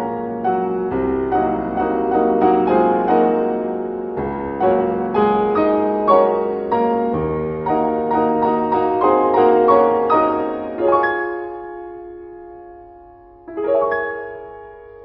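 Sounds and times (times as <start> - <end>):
slow piano music: 0.0 - 15.0.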